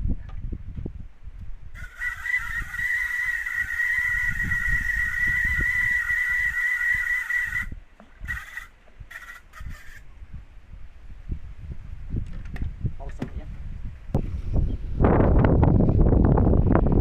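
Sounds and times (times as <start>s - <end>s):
fishing reel drag buzzing: 1.8s - 10.0s.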